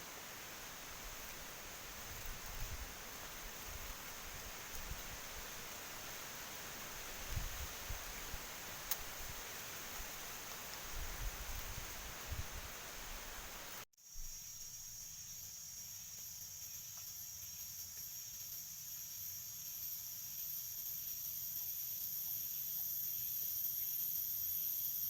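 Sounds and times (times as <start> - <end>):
wind and rain rushing: 0.0 - 13.8
crickets chirping: 0.0 - 25.0.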